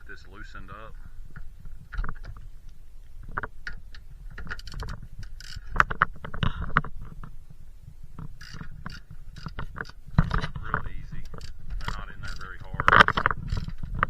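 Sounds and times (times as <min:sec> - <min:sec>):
ratchet clicking: 0:03.6 - 0:06.0, 0:08.4 - 0:10.0, 0:11.2 - 0:13.9.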